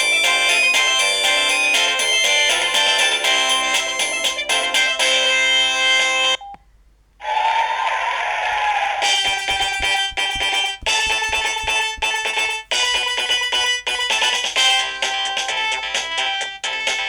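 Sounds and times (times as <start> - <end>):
mobile phone ringtone melody: 0.0 - 6.4.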